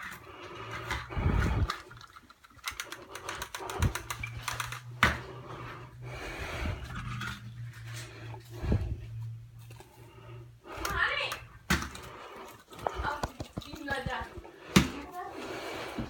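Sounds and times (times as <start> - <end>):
clicks and knocks of handling: 0.0 - 5.2, 12.7 - 15.0
low steady hum: 0.0 - 16.0.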